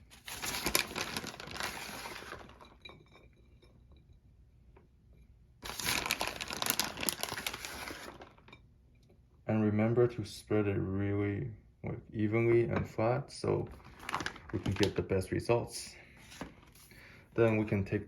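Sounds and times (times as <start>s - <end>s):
shredded cheese rustling: 0.0s - 2.8s, 5.6s - 8.4s.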